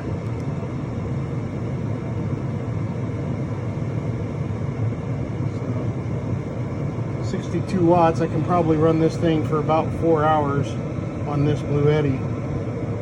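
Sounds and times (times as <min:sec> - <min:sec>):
air heater running: 0:00.0 - 0:13.0.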